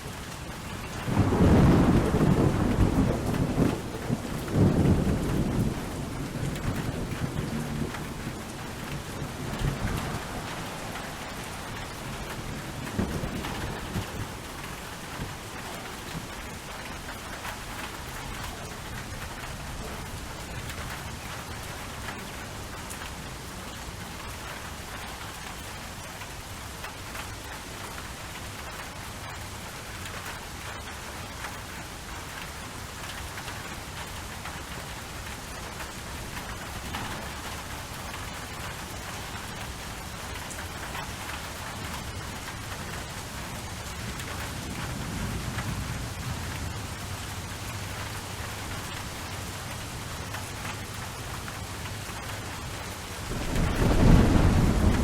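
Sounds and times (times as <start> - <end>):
steady rain falling: 0.0 - 55.0
low roll of thunder: 0.8 - 21.3, 40.1 - 52.2, 53.0 - 55.0.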